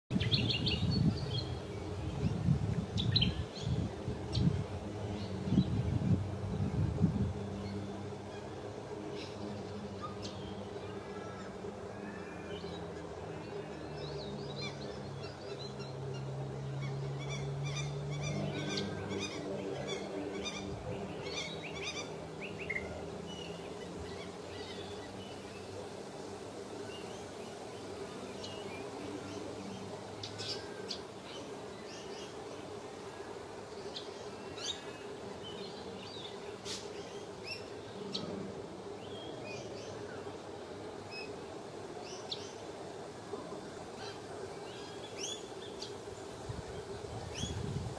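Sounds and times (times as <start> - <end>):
steady low hum: 0.1 - 47.9.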